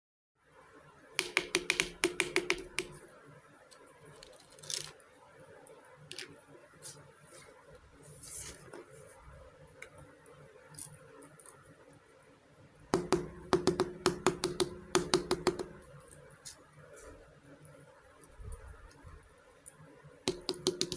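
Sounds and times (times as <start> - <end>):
toy pieces clicking and rattling: 4.1 - 5.0.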